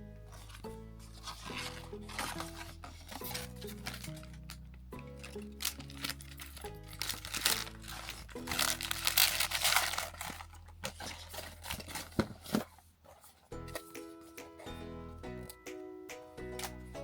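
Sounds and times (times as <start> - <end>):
background music: 0.0 - 17.0
packaging crinkling and tearing: 1.2 - 12.8.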